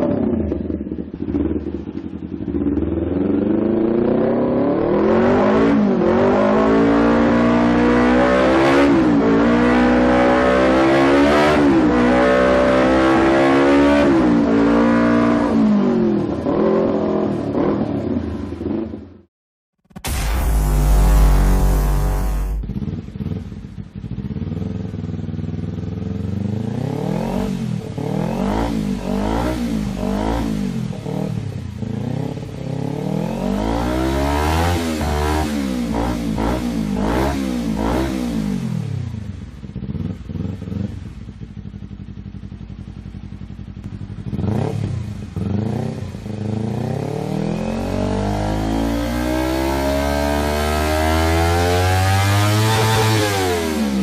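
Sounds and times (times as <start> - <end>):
motorcycle engine revving: 0.0 - 54.0.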